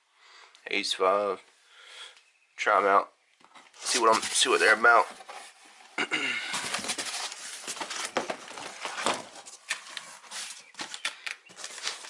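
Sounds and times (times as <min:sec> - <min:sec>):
cardboard rustling: 0:03.5 - 0:12.0.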